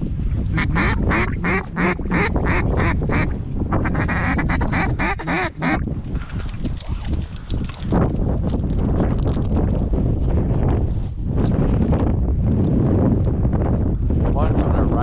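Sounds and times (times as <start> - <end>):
wind rumble on microphone: 0.0 - 15.0
duck quacking: 0.5 - 5.8.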